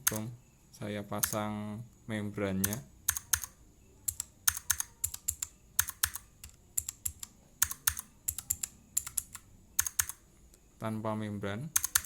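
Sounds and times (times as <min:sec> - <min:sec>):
mechanical keyboard keys clicking: 0:00.0 - 0:00.3, 0:01.2 - 0:01.4, 0:02.6 - 0:03.5, 0:04.1 - 0:10.2, 0:11.8 - 0:12.0.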